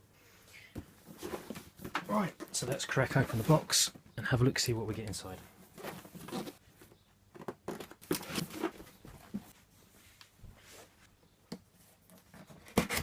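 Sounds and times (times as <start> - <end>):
cardboard tearing and rustling: 7.7 - 8.8.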